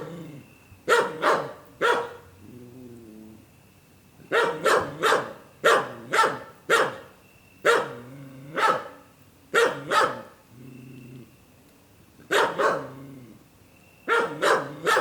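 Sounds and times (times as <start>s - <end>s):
dog barking: 0.9s - 2.2s, 4.3s - 7.1s, 7.7s - 8.0s, 8.6s - 9.0s, 9.6s - 10.4s, 12.3s - 12.9s, 14.1s - 15.0s.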